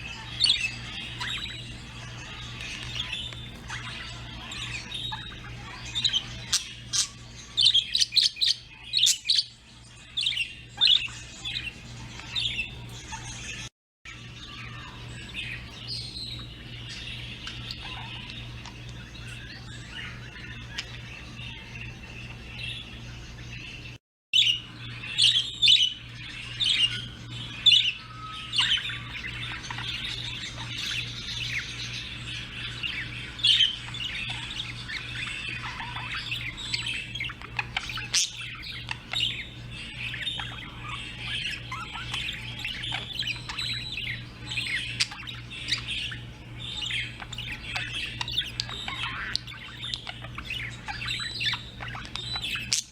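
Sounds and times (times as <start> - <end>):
small birds chirping: 0.0 - 52.9.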